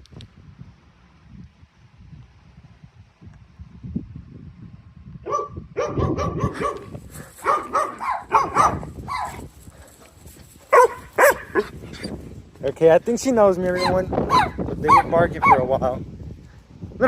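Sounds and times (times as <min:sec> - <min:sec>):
wind rumbling on microphone: 0:00.0 - 0:17.0
dog barking: 0:05.3 - 0:09.4, 0:10.7 - 0:11.8, 0:13.8 - 0:15.7.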